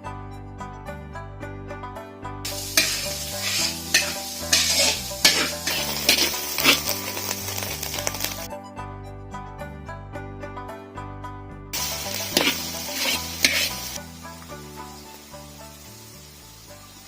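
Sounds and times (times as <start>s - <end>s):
background music: 0.0s - 17.0s
meat sizzling in a pan: 2.5s - 8.5s, 11.8s - 17.0s
spatula scraping a pan: 2.5s - 8.5s, 11.8s - 14.0s.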